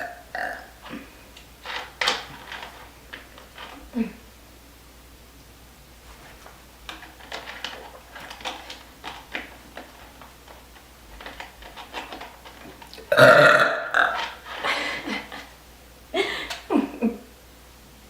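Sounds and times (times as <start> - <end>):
girl burping: 0.0 - 1.1, 13.1 - 14.2.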